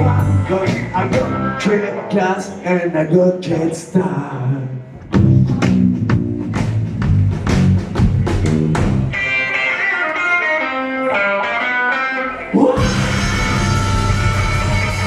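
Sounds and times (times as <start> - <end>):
drums: 0.0 - 2.0, 4.9 - 15.0
bass guitar: 0.0 - 2.6, 4.9 - 15.0
electric guitar playing: 0.0 - 2.6, 5.0 - 15.0.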